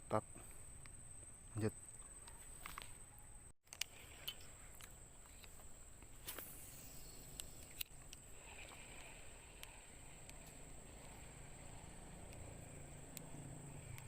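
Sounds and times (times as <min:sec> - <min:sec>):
steady high-pitched whine: 0:00.0 - 0:14.0
faint clicks: 0:12.2 - 0:13.3.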